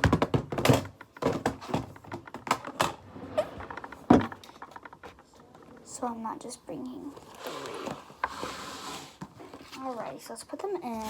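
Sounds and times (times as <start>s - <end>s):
palettes clicking and knocking: 0.0s - 6.1s.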